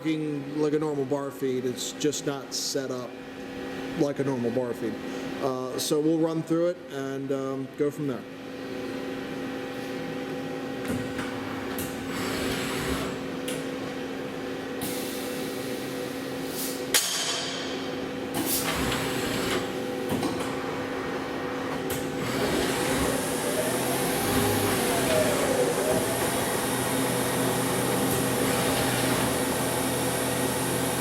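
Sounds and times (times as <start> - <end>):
lathe humming: 22.2 - 31.0.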